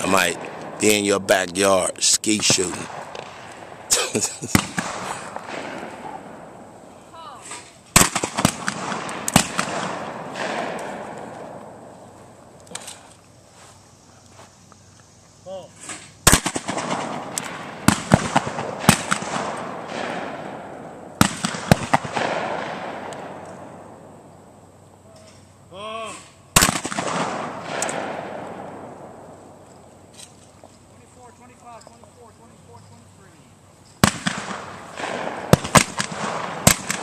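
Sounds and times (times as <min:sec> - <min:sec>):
shotgun shots echoing: 0:00.0 - 0:06.8, 0:07.4 - 0:11.9, 0:16.2 - 0:24.1, 0:26.6 - 0:29.3, 0:34.0 - 0:37.0.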